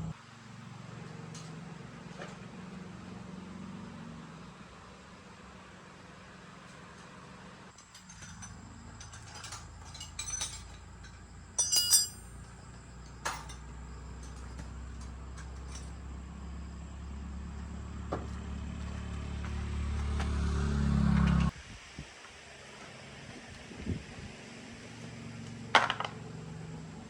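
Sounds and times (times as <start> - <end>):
metal tools clinking: 7.7 - 16.0
low steady hum: 7.8 - 16.0.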